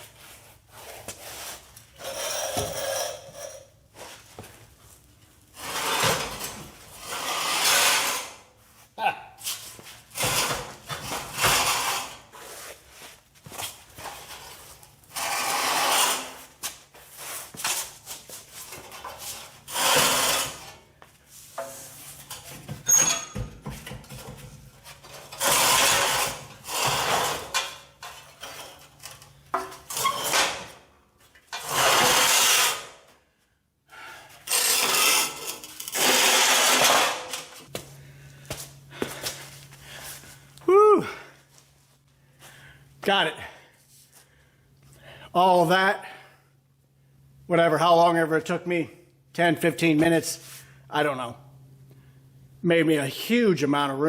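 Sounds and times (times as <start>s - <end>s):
scraping and rubbing: 0.0s - 4.6s, 5.5s - 8.9s, 9.5s - 22.7s, 24.8s - 29.0s, 31.6s - 33.0s, 34.5s - 37.7s
tool noise bursts: 5.6s - 8.4s, 19.6s - 20.8s, 25.1s - 28.7s, 31.5s - 33.0s, 34.4s - 37.5s.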